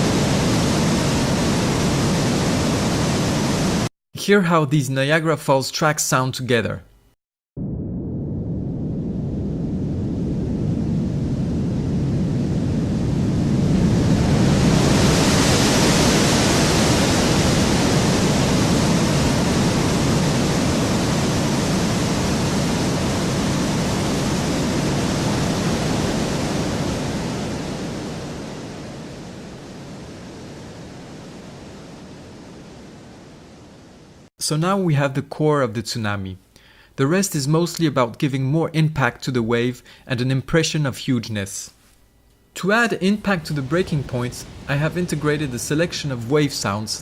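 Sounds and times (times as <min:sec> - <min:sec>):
deep rushing water rumble: 0:00.0 - 0:03.9, 0:07.6 - 0:34.3, 0:43.0 - 0:47.0
bright hissing wave wash: 0:43.0 - 0:47.0.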